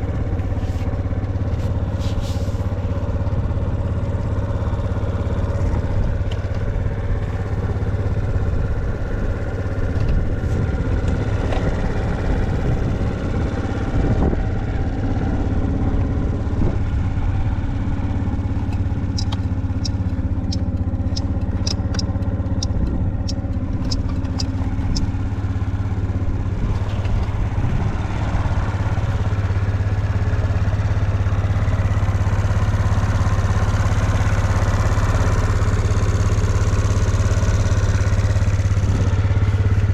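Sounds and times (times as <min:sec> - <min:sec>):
scooter engine idling: 0:00.0 - 0:39.9
sharp ticks: 0:18.7 - 0:25.1.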